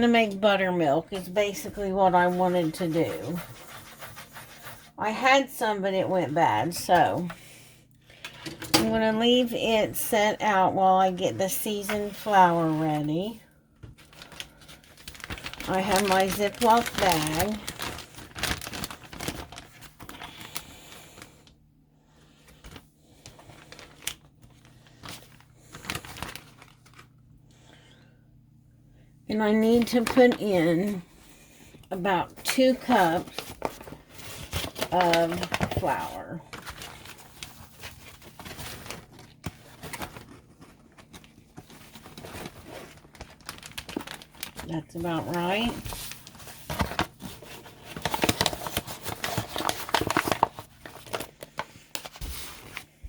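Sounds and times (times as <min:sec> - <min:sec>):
plastic bag crinkling: 0:10.8 - 0:21.5, 0:22.3 - 0:27.2, 0:29.6 - 0:53.0.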